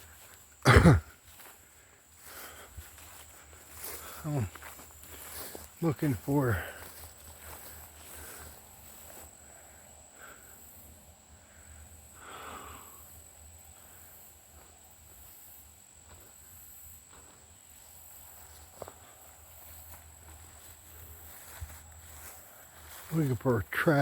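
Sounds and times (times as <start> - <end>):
crickets and insects chirping: 0.0 - 24.0.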